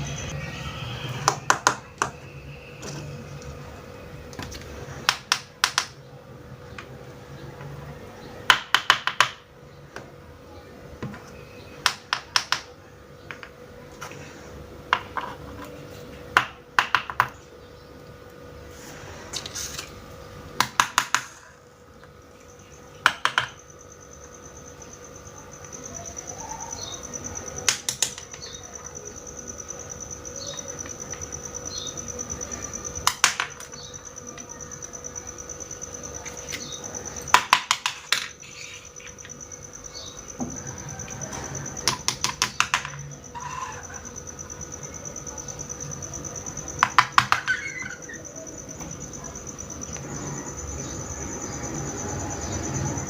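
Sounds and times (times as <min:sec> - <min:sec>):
high-pitched whine: 0:00.0 - 0:04.4
plastic toy pieces clicking: 0:27.7 - 0:28.4.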